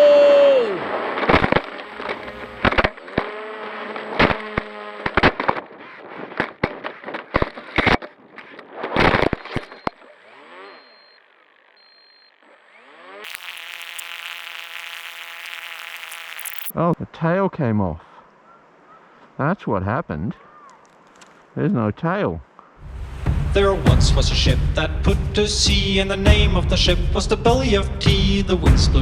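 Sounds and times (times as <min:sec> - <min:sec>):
steady buzzing hum: 0:13.3 - 0:16.7.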